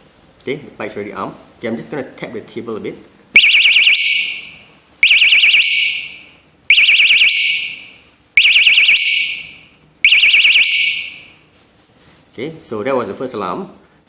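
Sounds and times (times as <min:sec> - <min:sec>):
warbling alarm siren bursts: 0:03.4 - 0:11.3.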